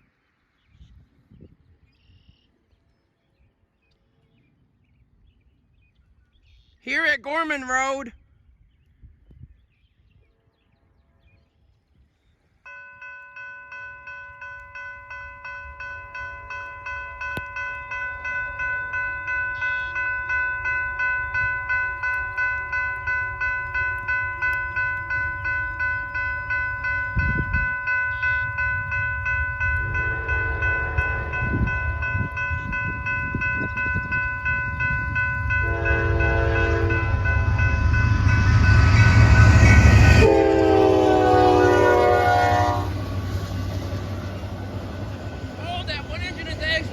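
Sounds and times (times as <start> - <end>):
crossing bell ringing: 12.7 - 46.9
train locomotive rumble: 13.8 - 46.9
train horn blasts: 29.7 - 32.7, 35.4 - 43.2.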